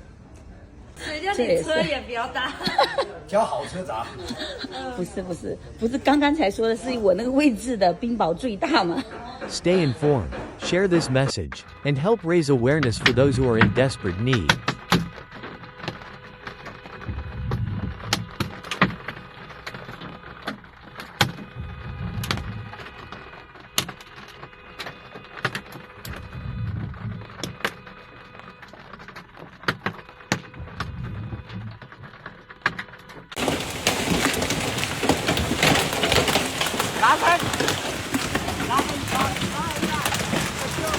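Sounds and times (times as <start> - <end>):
sharp cracks and knocks: 14.3 - 26.4, 27.3 - 40.9
low rumbles: 17.1 - 18.2, 33.4 - 40.9.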